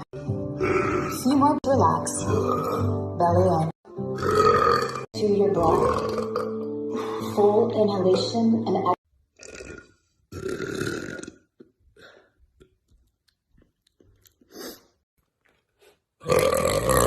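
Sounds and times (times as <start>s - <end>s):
woman burping: 5.7s - 6.7s, 16.2s - 17.0s
mouth clicks and smacks: 11.2s - 16.0s.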